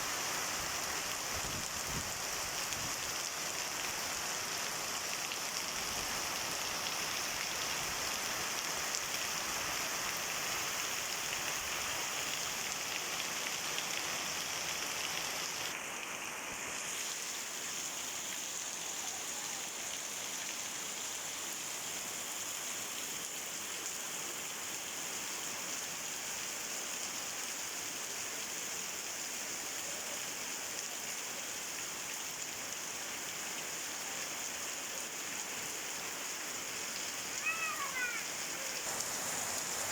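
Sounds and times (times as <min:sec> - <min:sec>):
heavy rain pouring: 0:00.0 - 0:17.6, 0:36.0 - 0:39.9.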